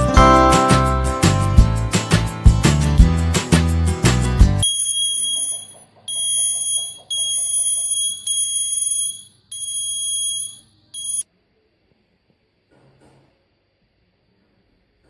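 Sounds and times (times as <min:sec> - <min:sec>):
door alarm buzzer beeping: 0:04.6 - 0:11.2.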